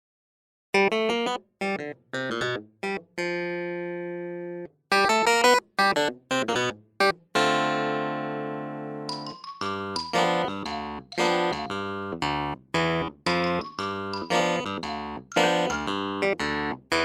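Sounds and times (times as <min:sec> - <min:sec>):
bright plucked melody: 0:09.1 - 0:17.0.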